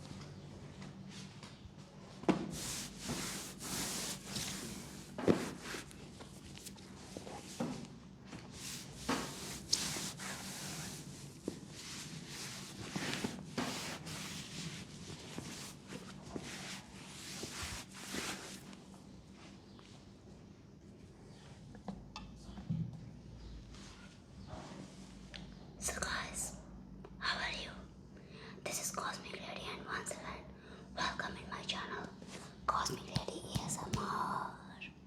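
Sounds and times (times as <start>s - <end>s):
hands massaging skin: 2.5s - 7.6s, 8.6s - 18.8s, 32.9s - 34.2s
hands hitting skin: 33.2s - 34.2s.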